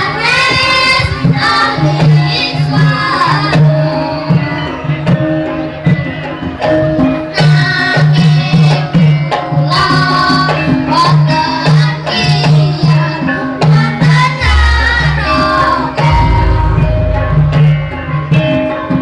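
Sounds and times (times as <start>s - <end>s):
drum: 14.3s - 18.9s
large gong stroke: 14.4s - 18.9s.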